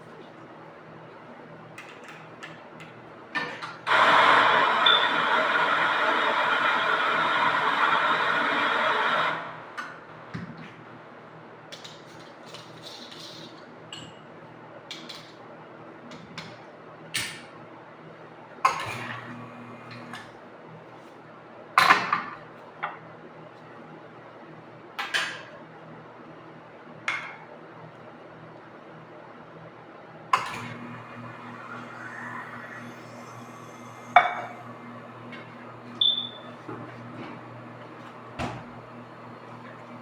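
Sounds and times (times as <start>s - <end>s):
cups and utensils clinking: 34.1s - 34.7s.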